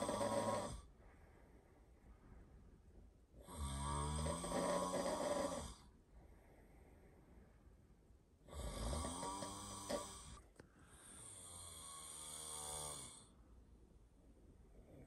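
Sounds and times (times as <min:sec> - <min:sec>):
person snoring: 0:00.0 - 0:00.9, 0:03.4 - 0:05.9, 0:08.5 - 0:10.4, 0:11.0 - 0:13.4.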